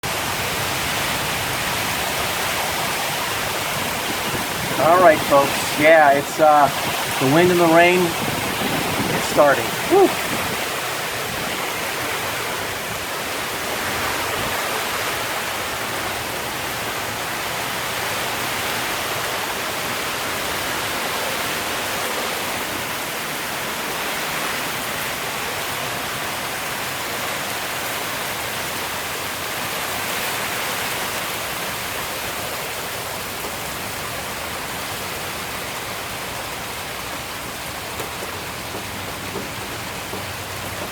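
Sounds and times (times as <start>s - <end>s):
heavy wind-driven rain: 0.0s - 40.9s.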